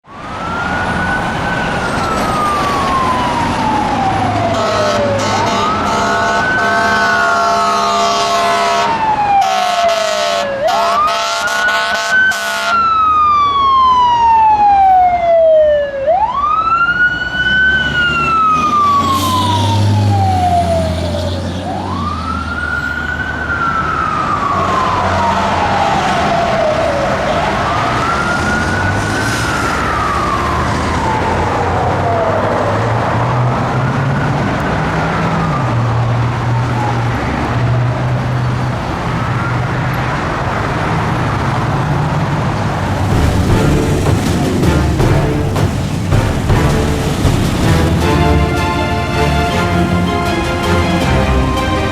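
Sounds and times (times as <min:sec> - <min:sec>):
fire engine siren wailing: 0:00.0 - 0:51.9
air horns blasting: 0:04.4 - 0:13.0, 0:42.9 - 0:51.9.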